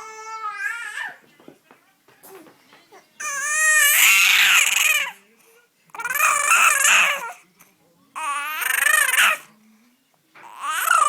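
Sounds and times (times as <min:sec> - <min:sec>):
baby screaming: 0:00.0 - 0:01.2, 0:03.2 - 0:05.2, 0:06.0 - 0:07.3, 0:08.2 - 0:09.5, 0:10.4 - 0:11.0.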